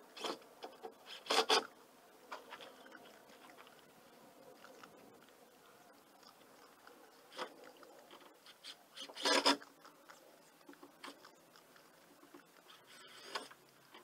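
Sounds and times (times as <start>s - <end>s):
handling clicks and scrapes: 0.1s - 1.7s, 7.2s - 11.4s, 12.2s - 14.0s
scraping rustle: 7.3s - 9.8s, 10.5s - 14.0s.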